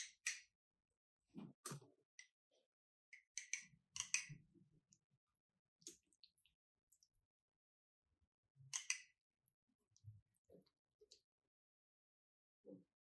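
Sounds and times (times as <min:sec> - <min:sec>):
small clicks and light knocks: 0:03.1 - 0:04.4.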